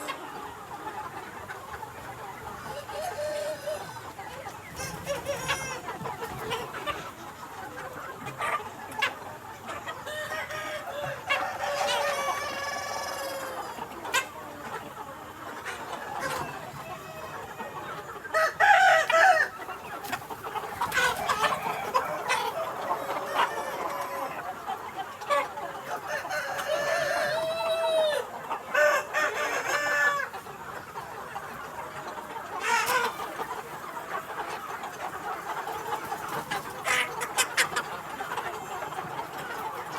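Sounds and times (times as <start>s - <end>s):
chickens clucking: 0.0s - 39.9s
roosters crowing: 18.3s - 19.7s, 25.9s - 30.3s.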